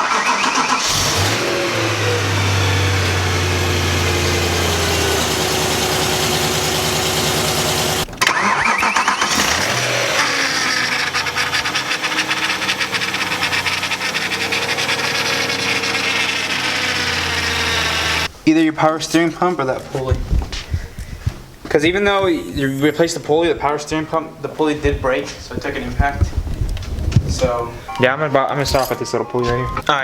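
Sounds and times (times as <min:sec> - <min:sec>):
car engine starting and idling: 0:00.0 - 0:18.3.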